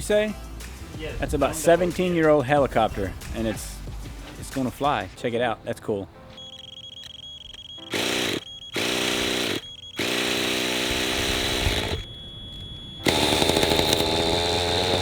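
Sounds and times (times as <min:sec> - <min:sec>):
model helicopter engine: 0:07.9 - 0:12.2, 0:13.0 - 0:15.0.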